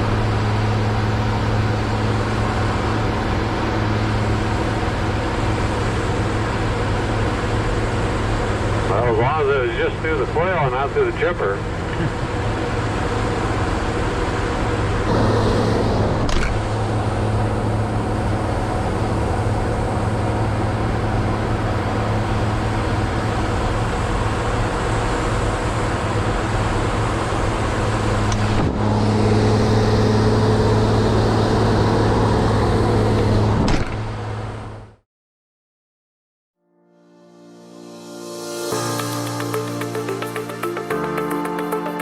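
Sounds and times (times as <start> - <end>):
heavy equipment engine humming: 0.0 - 33.5.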